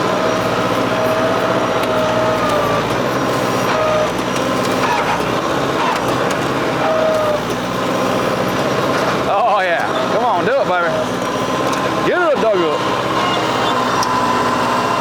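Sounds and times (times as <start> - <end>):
tractor diesel engine under load: 0.0 - 15.0.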